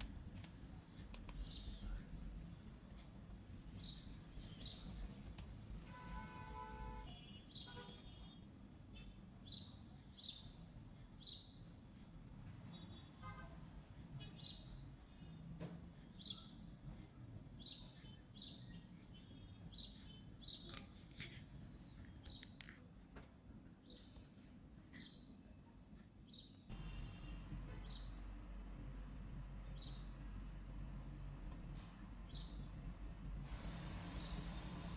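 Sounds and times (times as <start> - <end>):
small bird chirping: 22.2 - 22.7, 32.3 - 32.7
low steady hum: 25.6 - 33.7.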